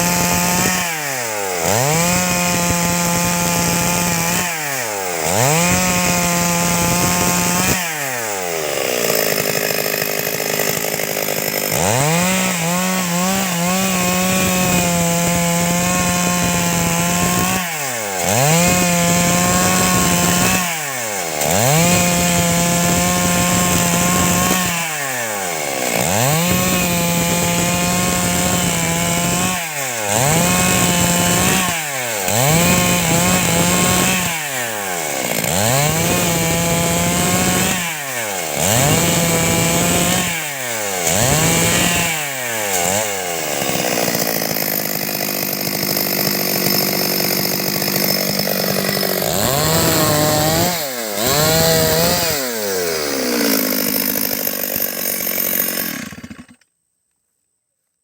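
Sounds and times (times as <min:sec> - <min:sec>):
chainsaw cutting wood: 0:00.0 - 0:56.7.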